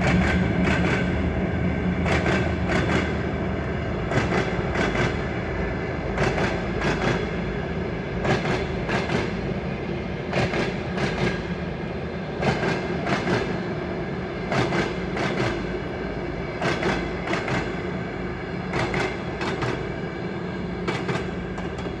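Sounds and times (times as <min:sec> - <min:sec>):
locomotive drone: 0:00.0 - 0:22.0
train wheels clattering over rail joints: 0:00.0 - 0:22.0.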